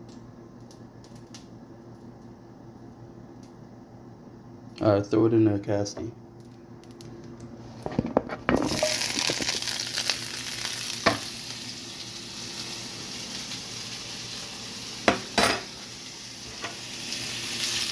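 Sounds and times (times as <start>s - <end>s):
potatoes sizzling in skillet: 8.6s - 17.9s.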